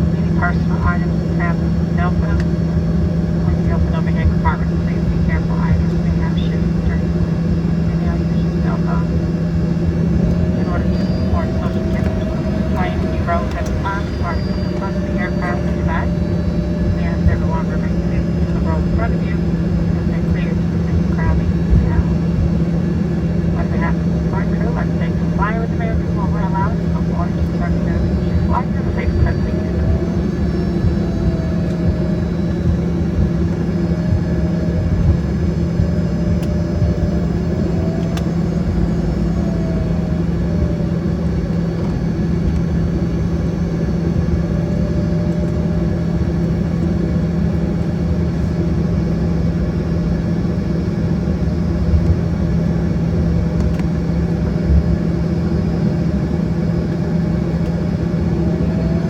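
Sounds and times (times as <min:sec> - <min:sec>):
jet engines in cabin: 0:00.0 - 0:59.0.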